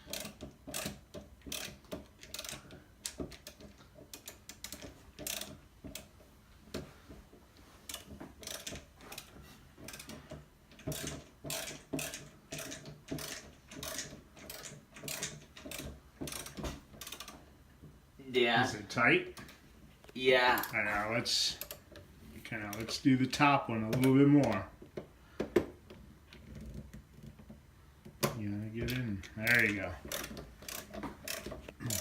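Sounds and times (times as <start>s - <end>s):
ratcheting screwdriver clicking: 0.1s - 6.1s, 7.9s - 17.4s, 28.9s - 32.0s.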